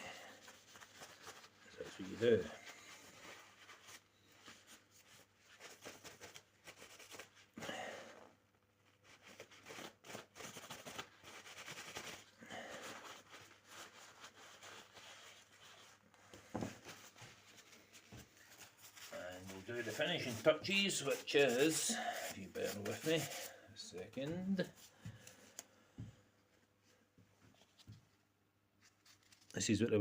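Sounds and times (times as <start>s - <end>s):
person breathing: 7.6s - 8.3s, 12.4s - 13.3s, 21.9s - 22.4s, 24.8s - 26.4s
cloth rubbing wooden handle: 9.3s - 23.6s.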